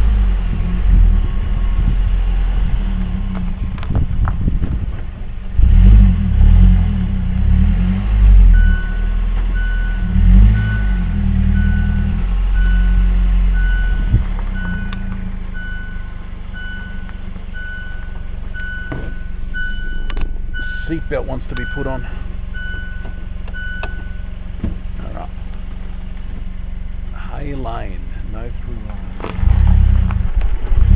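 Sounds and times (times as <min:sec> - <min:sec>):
low rumble of car moving: 0:00.0 - 0:30.9
seatbelt reminder chime beeping: 0:15.6 - 0:24.2.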